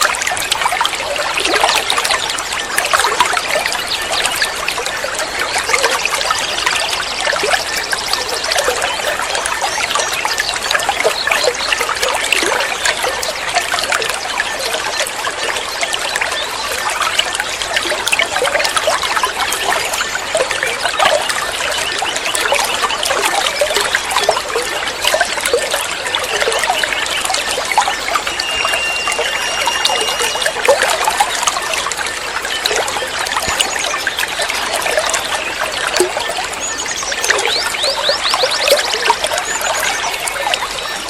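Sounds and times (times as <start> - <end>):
water trickling and babbling: 0.0 - 41.0
whistle-like tone: 27.8 - 31.3.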